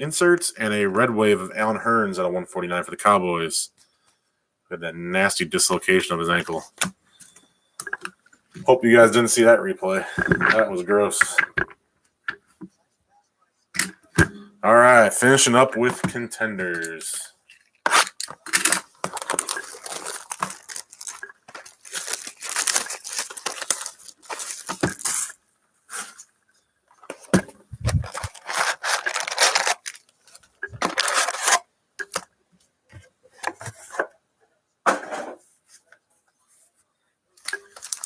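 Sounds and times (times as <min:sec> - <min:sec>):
plastic and foil wrapper ripping: 0:17.8 - 0:25.4, 0:27.8 - 0:31.6, 0:37.4 - 0:38.0.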